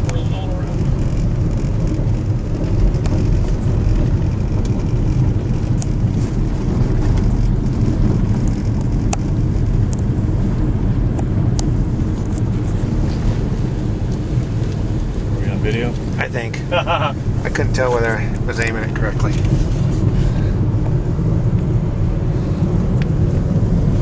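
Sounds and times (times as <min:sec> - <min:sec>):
car road and engine rumble: 0:00.0 - 0:24.0.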